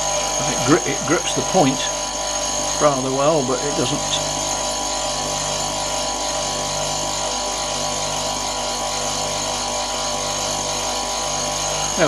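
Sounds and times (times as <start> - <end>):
electric motor humming and whining: 0.0 - 12.0.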